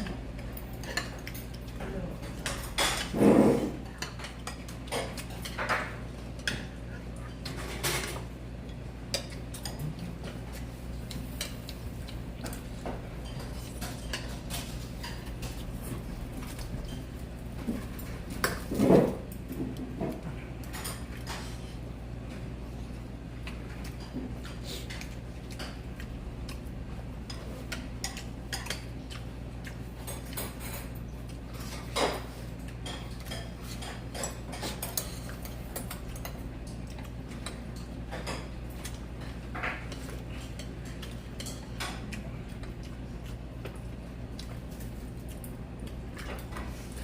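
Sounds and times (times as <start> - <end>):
utensils and dishes clinking: 0.4 - 21.7, 27.2 - 42.1.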